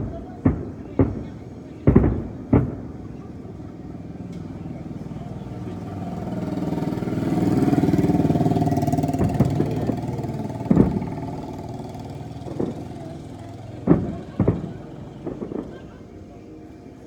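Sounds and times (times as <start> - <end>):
firework bangs: 0.0 - 16.5
motor engine running: 4.2 - 15.5.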